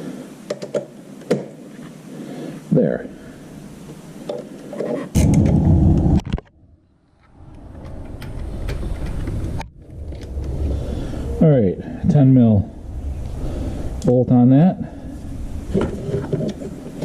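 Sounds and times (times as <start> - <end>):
loud low scraping: 5.2 - 17.0.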